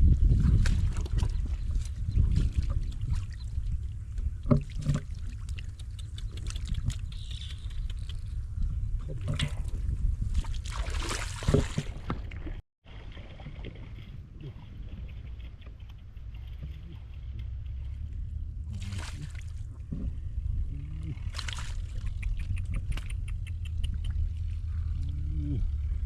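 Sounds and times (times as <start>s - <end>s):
water sloshing and splashing: 0.0s - 7.2s, 9.0s - 20.2s, 21.0s - 22.4s
heavy low rumble: 13.9s - 26.0s.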